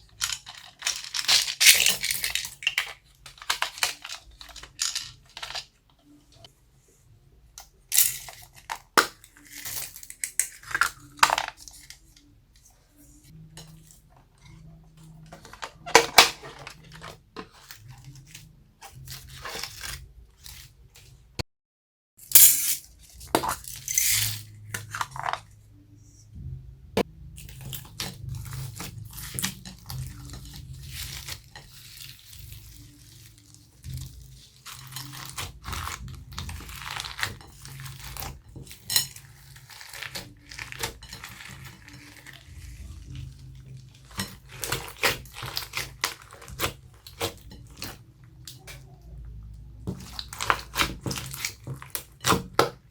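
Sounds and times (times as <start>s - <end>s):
faint low hum: 24.0s - 37.0s.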